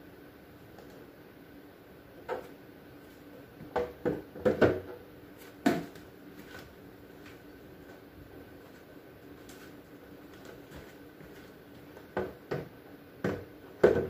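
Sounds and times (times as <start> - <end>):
containers clunking onto shelves: 3.6 - 5.0.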